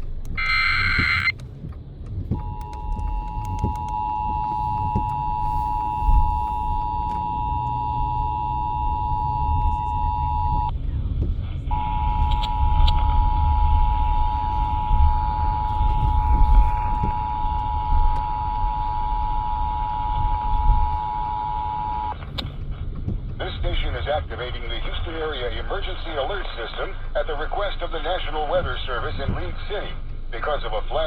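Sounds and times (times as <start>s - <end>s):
constant low rumble: 0.0s - 31.0s
digital data burst: 0.3s - 1.3s
two-tone attention signal: 0.3s - 1.3s, 2.4s - 10.7s, 11.7s - 22.2s.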